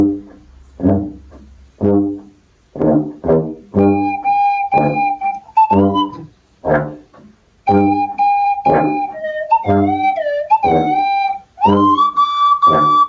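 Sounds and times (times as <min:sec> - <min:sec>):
long held musical note: 0:03.8 - 0:06.3, 0:07.7 - 0:13.0
short separate musical notes: 0:03.8 - 0:06.9, 0:07.7 - 0:13.0.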